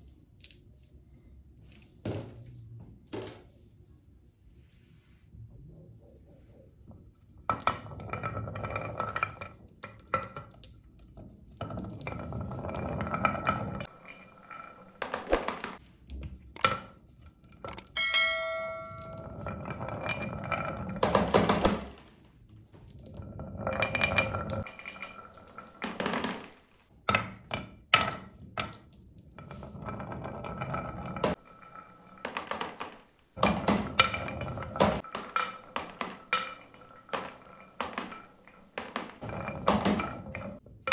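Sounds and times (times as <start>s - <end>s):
marbles rolling down a marble run: 7.5s - 10.8s, 11.5s - 15.8s, 18.8s - 22.0s, 22.9s - 26.9s, 28.0s - 40.6s
bell-like ring: 17.9s - 19.4s.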